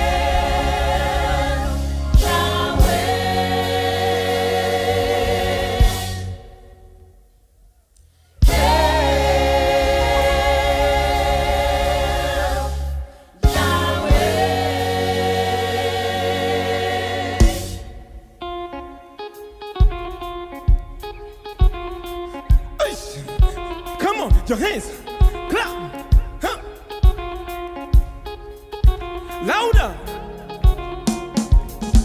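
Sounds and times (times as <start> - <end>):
gospel choir singing: 0.0 - 7.1, 8.4 - 18.9.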